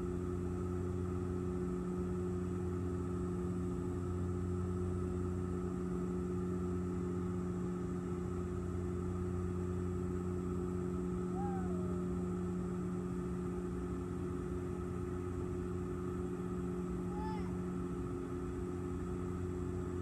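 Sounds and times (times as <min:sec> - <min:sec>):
airliner engines droning in cabin: 0:00.0 - 0:20.0.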